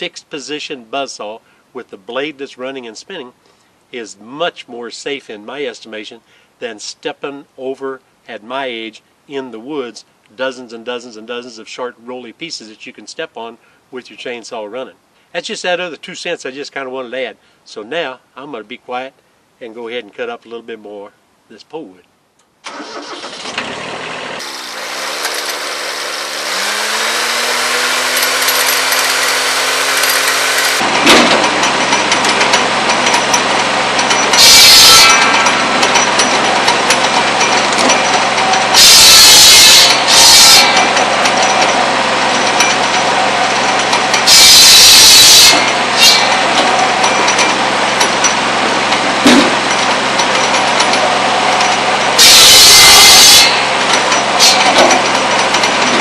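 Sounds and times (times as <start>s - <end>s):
tractor diesel engine: 22.6s - 56.0s
buzz saw humming: 24.4s - 30.9s
circular saw cutting wood: 24.4s - 48.4s, 50.3s - 56.0s.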